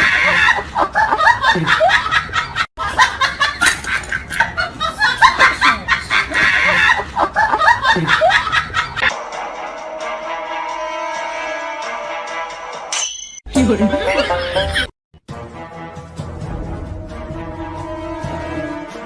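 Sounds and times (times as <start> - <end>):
people laughing: 0.0 - 9.1, 13.6 - 14.9
music: 9.1 - 19.0.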